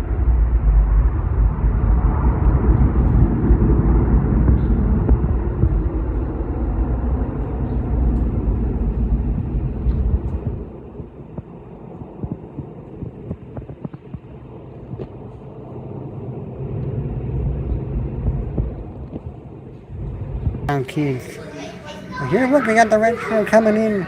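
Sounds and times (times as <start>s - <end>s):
jet engines rumbling: 0.0s - 24.0s.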